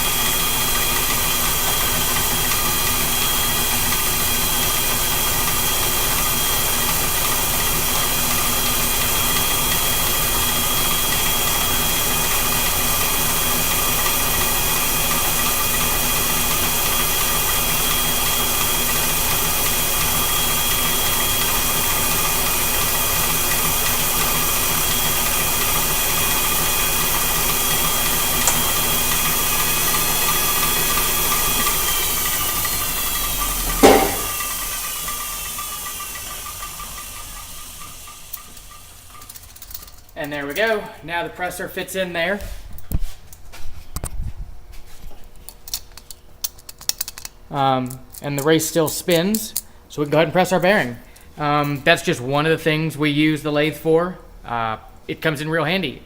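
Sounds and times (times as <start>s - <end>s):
lathe motor whine: 0.0s - 39.7s.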